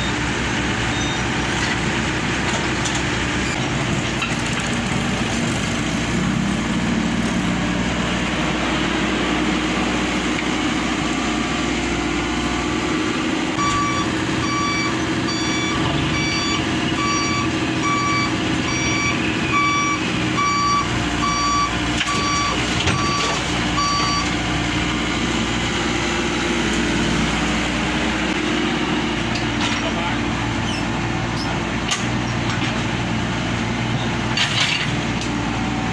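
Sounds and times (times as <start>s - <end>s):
truck engine running: 0.0s - 35.9s
reversing alarm beeping: 13.6s - 24.4s.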